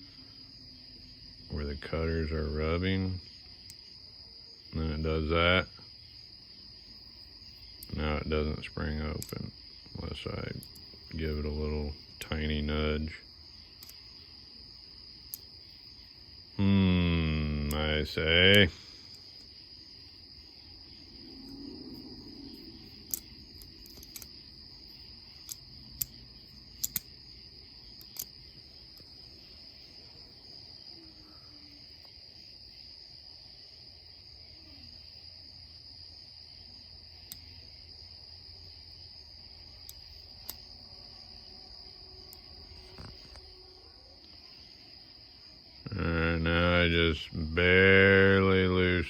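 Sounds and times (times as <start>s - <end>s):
steady high-pitched whine: 0.0s - 32.2s.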